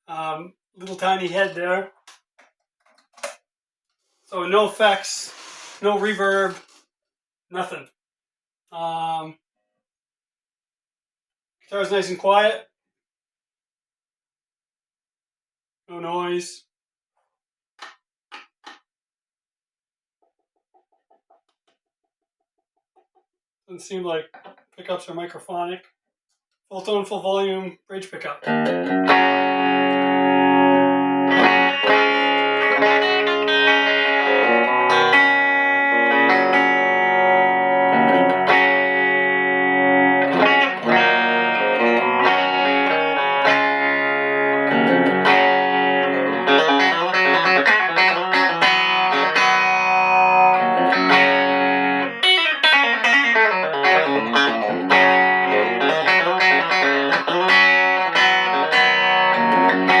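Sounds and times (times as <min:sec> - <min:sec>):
clean electric guitar playing: 0:28.4 - 1:00.0.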